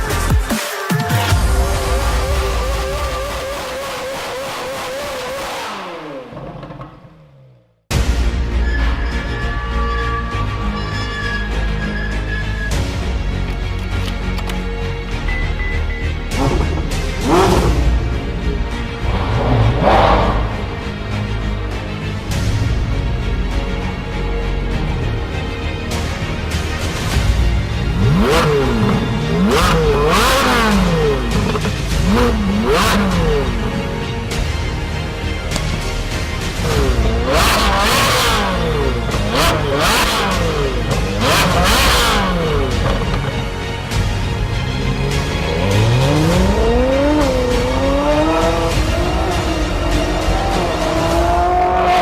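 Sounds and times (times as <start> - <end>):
background music: 0.0 - 6.4, 7.0 - 52.0
car engine revving: 1.7 - 7.8, 16.3 - 22.6, 26.0 - 52.0.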